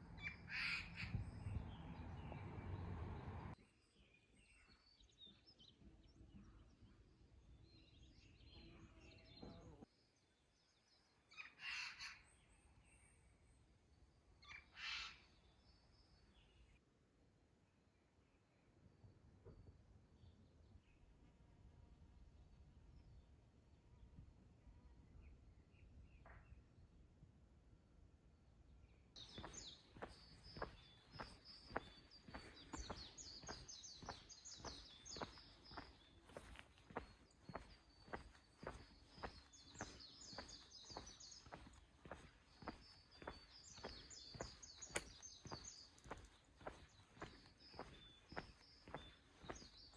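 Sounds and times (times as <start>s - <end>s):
faint birds chirping: 0.0s - 27.0s, 28.4s - 49.9s
footsteps walking: 29.2s - 49.9s.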